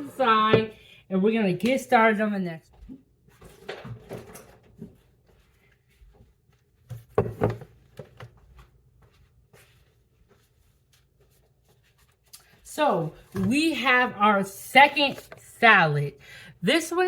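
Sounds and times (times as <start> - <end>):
kitchen items knocking on counter: 7.0 - 8.3.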